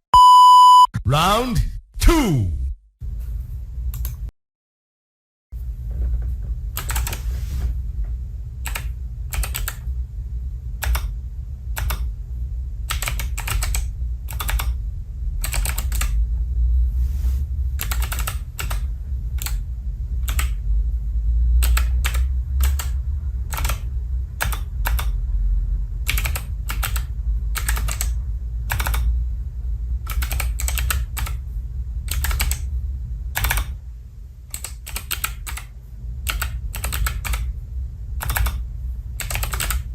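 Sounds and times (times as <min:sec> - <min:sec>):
steady low hum: 0:05.6 - 0:39.9
keypad keys clicking: 0:08.7 - 0:09.8, 0:10.8 - 0:11.1, 0:11.8 - 0:12.1, 0:12.9 - 0:14.8, 0:15.5 - 0:16.2, 0:17.8 - 0:19.6, 0:24.4 - 0:25.2, 0:26.1 - 0:29.1, 0:30.1 - 0:31.4, 0:32.1 - 0:32.7, 0:33.4 - 0:33.8, 0:34.5 - 0:35.7, 0:36.3 - 0:37.5, 0:38.2 - 0:38.6, 0:39.2 - 0:39.9.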